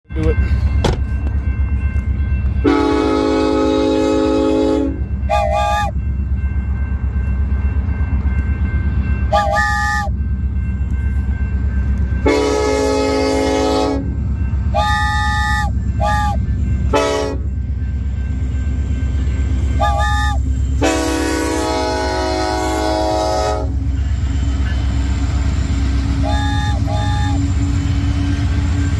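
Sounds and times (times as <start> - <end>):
train rumbling past: 0.0 - 28.9
train horn blasts: 2.6 - 6.0, 9.2 - 10.2, 12.2 - 17.6, 19.6 - 24.0, 26.0 - 28.6
wooden train whistle toots: 2.6 - 6.0, 9.2 - 10.2, 12.2 - 14.1, 14.7 - 17.5, 19.7 - 23.8, 26.0 - 28.6.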